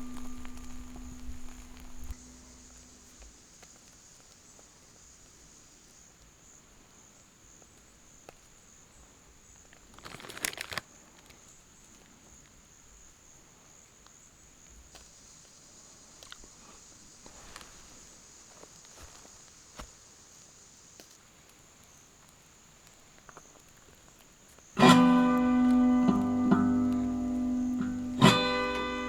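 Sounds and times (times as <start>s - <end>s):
rustling crunch: 0.0s - 3.3s, 9.8s - 11.4s, 16.2s - 20.0s, 23.2s - 29.0s
insects droning: 0.0s - 29.0s.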